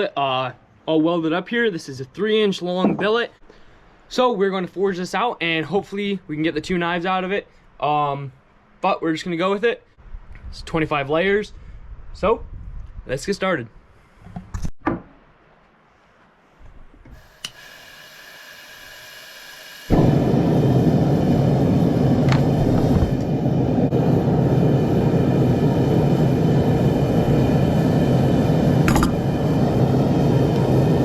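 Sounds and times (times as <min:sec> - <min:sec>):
burner rushing: 0:18.6 - 0:31.0.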